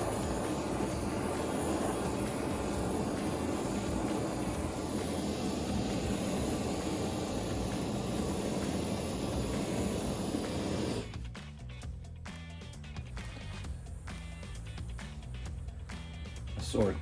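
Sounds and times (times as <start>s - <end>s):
gas torch flame rushing: 0.0s - 11.2s.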